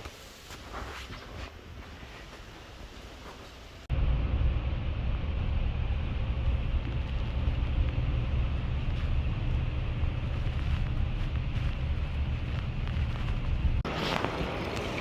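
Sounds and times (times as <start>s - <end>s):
road or wind noise: 1.7s - 15.0s
moving vehicle rumble: 3.8s - 15.0s.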